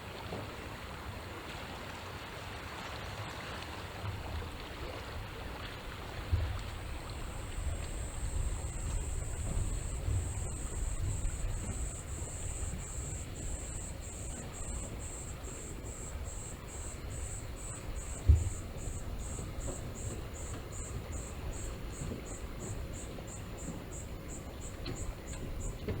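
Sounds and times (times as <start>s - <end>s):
insect chirping: 6.6s - 26.0s
dull thump: 14.3s - 20.7s.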